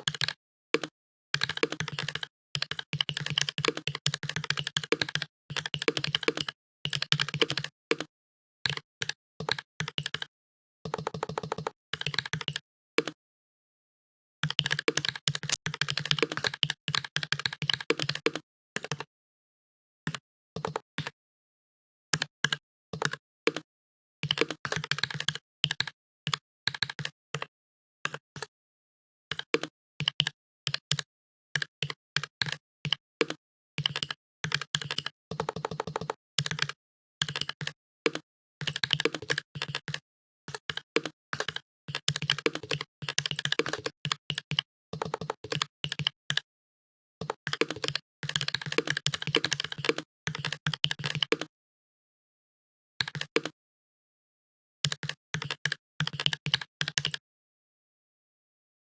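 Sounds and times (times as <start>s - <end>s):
fast typing on keyboard: 1.4s - 5.2s, 41.4s - 46.1s, 47.2s - 51.5s, 55.0s - 57.2s.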